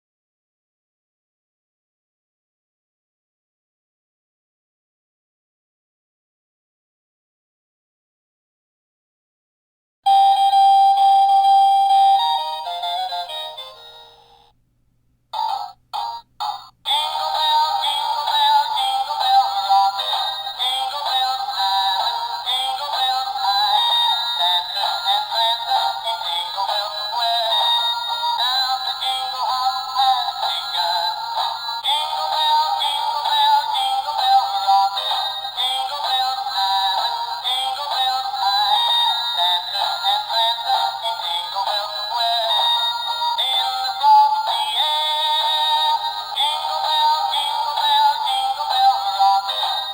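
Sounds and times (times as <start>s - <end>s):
toy playing jingly electronic tune: 10.1s - 14.5s, 15.4s - 49.9s
synthetic singing voice: 15.4s - 49.9s.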